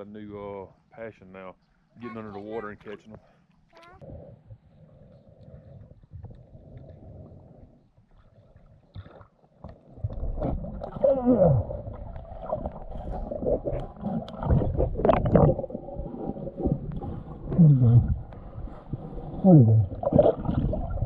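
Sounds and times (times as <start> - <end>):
underwater gurgling and bubbling: 4.1 - 21.0
low moaning sounds: 10.9 - 12.0.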